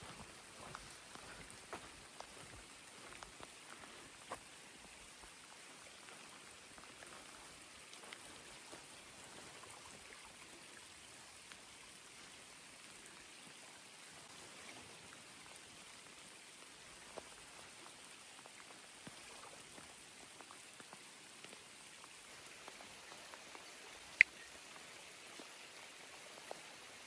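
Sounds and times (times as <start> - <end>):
raindrops ticking: 22.3 - 25.6
rain hissing: 22.3 - 27.0.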